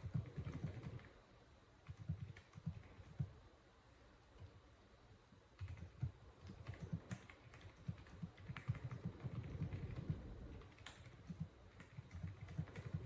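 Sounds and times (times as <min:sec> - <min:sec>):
typing on mechanical keyboard: 0:00.0 - 0:01.2, 0:01.8 - 0:03.3, 0:05.6 - 0:13.0.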